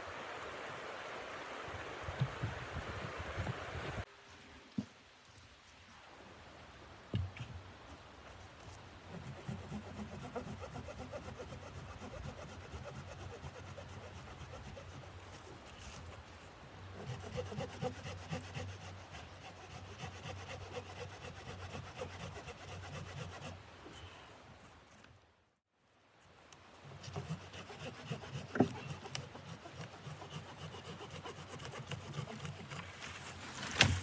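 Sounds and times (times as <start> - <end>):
hand saw cutting wood: 9.1 - 15.1, 16.9 - 23.6, 26.9 - 34.0.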